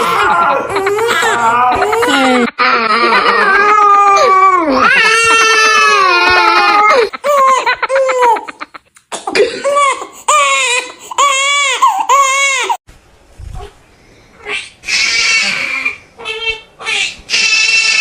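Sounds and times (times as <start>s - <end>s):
person crying: 0.0s - 8.8s.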